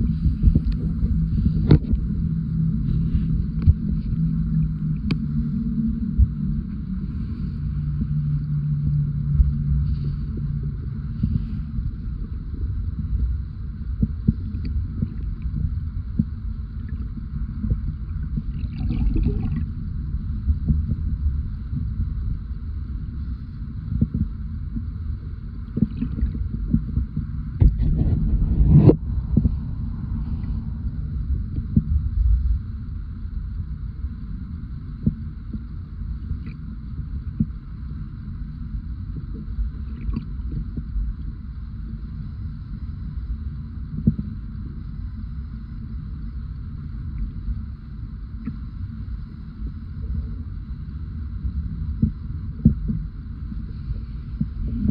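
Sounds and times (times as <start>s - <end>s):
underwater rushing rumble: 0.0s - 43.0s
underwater crackling: 17.8s - 19.8s.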